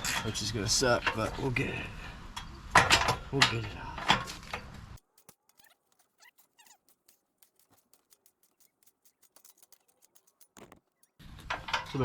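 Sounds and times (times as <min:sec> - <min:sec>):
brief squeaks: 0:05.4 - 0:07.2.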